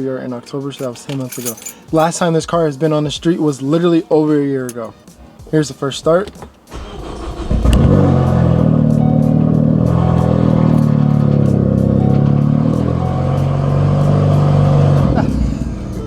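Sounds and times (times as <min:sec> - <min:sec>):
turbocharged car engine starting: 0:06.7 - 0:16.0.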